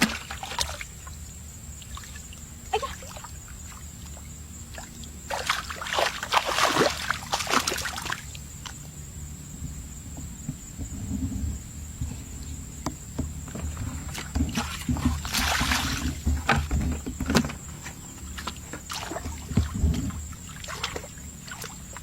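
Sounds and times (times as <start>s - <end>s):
muddy water splashing: 0.0s - 9.0s, 13.5s - 22.0s.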